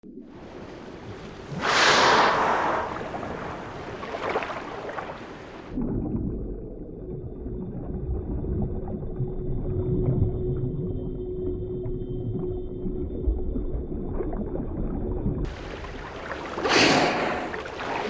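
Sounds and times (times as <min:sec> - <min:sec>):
rushing surge of water: 0:00.4 - 0:05.8, 0:15.4 - 0:18.0
muffled underwater rumble: 0:05.7 - 0:17.7
low moaning tone: 0:05.9 - 0:15.4.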